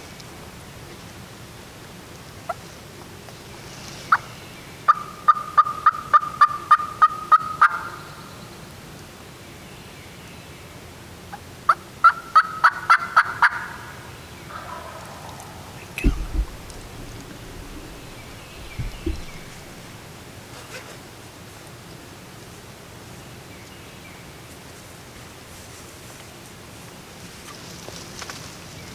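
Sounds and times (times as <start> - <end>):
low thump: 16.0 - 20.2.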